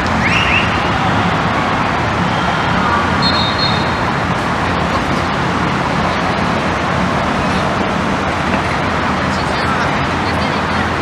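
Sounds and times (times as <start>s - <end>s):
loud rushing noise: 0.0s - 11.0s
faint high whistle: 0.2s - 1.0s, 3.2s - 4.0s.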